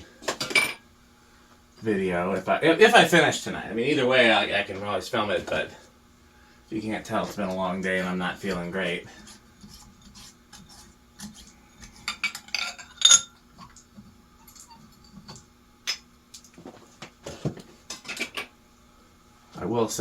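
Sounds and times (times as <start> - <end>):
faint steady hum: 0.0 - 20.0
small metal parts clinking: 12.5 - 13.3.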